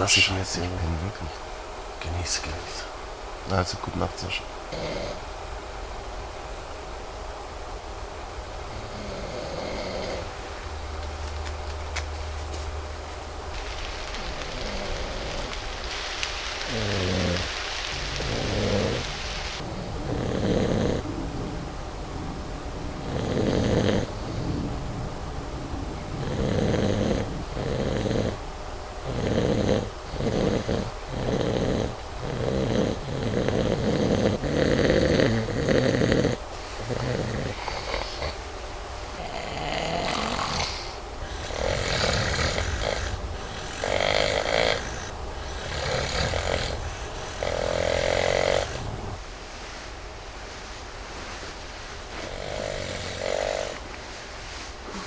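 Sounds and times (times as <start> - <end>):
man snoring: 4.0 - 5.4, 8.6 - 10.8, 13.6 - 21.0, 23.0 - 24.6, 26.2 - 28.4, 29.0 - 38.5, 39.1 - 49.2, 52.2 - 53.8.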